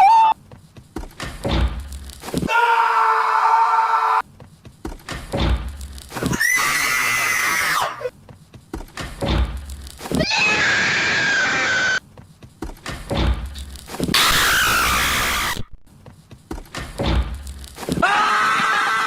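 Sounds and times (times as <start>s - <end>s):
dull thumps: 0.4s - 2.5s, 4.3s - 6.4s, 8.2s - 10.3s, 12.1s - 14.2s, 16.0s - 18.1s.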